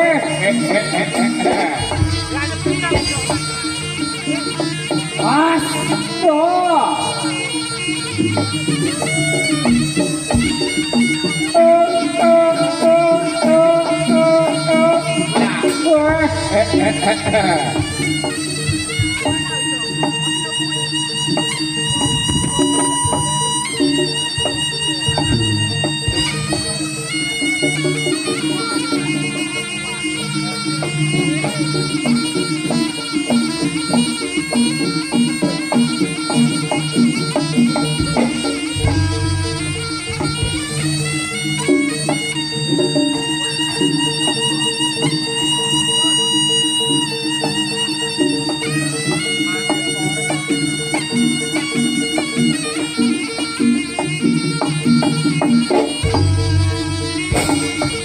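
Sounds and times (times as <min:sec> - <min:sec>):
held drone: 0:00.0 - 0:50.5, 0:56.0 - 0:58.0
gongs and drums beating: 0:00.0 - 0:58.0
reedy wind instrument long note: 0:00.0 - 0:58.0
drum strikes in steady beat: 0:01.7 - 0:03.7, 0:15.4 - 0:20.1, 0:21.9 - 0:26.9, 0:34.6 - 0:42.3, 0:54.5 - 0:58.0.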